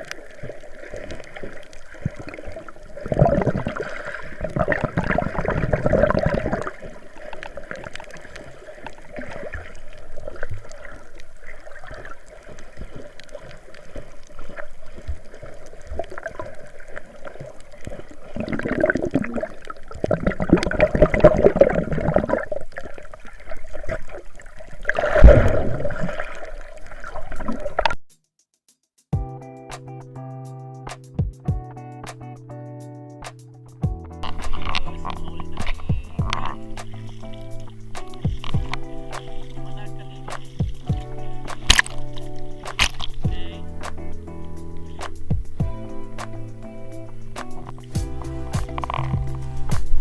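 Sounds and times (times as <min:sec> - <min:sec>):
seawater sloshing and splashing: 0:00.0 - 0:28.0, 0:34.2 - 0:44.1.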